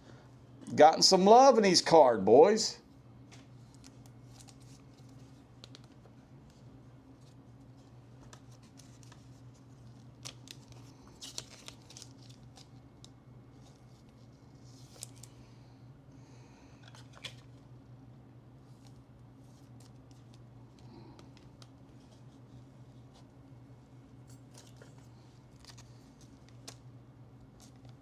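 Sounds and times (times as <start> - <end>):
low steady hum: 0.0 - 28.0
handling trading cards and packaging: 3.2 - 15.5, 16.6 - 17.8, 18.6 - 23.4, 24.0 - 28.0.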